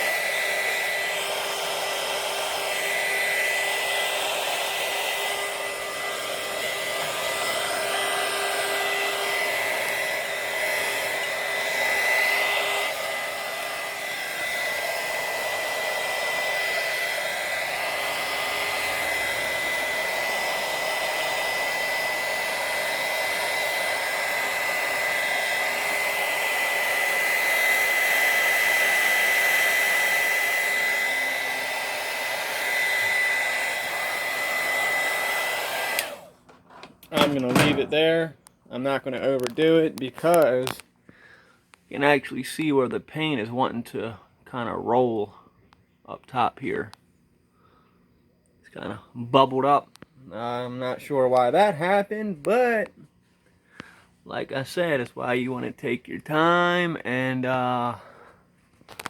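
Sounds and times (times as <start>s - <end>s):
heat gun blowing with high whine: 0.0s - 40.8s, 58.8s - 59.0s.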